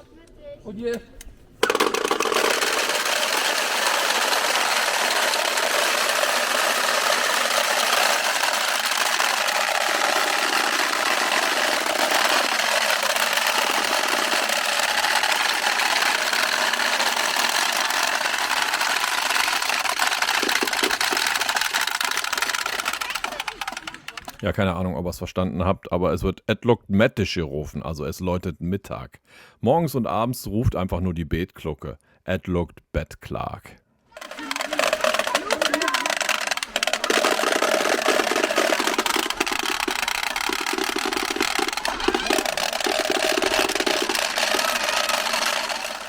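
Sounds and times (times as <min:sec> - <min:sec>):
wooden rattles clattering: 0:01.6 - 0:24.4, 0:34.2 - 0:46.0.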